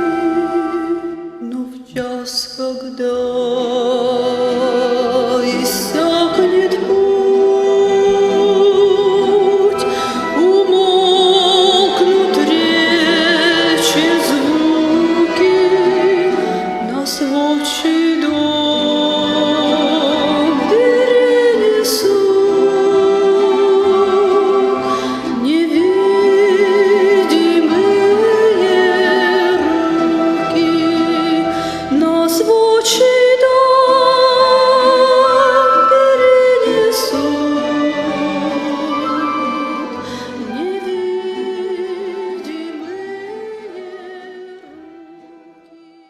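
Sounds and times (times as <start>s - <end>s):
musical accompaniment: 0.0s - 46.0s
singing with vibrato: 0.0s - 46.0s.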